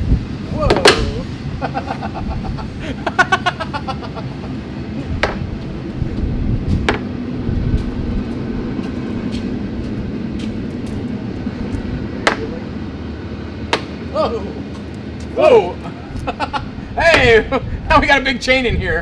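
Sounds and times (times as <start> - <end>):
steady low rumble: 0.0 - 19.0
metal clacking against magnet: 12.2 - 12.6.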